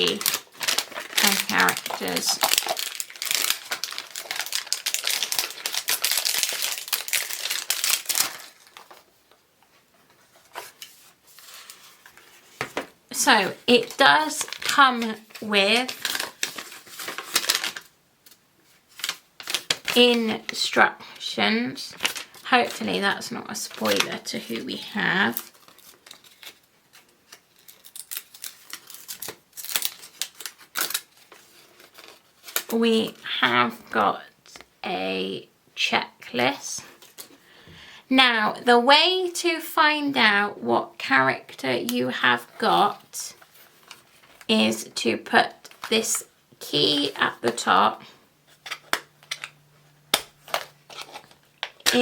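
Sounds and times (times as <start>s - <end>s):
packaging crinkling and rustling: 0.0s - 20.6s, 21.9s - 32.8s, 37.0s - 37.4s, 42.4s - 44.5s, 45.5s - 46.4s, 48.5s - 52.0s.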